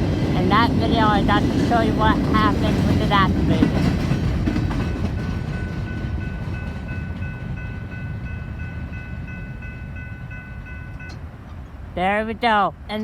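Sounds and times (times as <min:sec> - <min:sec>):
crossing warning bell dinging: 0:00.0 - 0:13.0
train cars rumbling past: 0:00.0 - 0:13.0.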